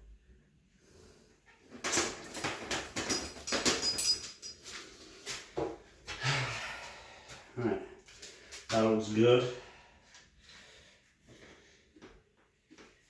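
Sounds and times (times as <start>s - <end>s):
metal bicycle parts clattering: 1.5s - 6.3s.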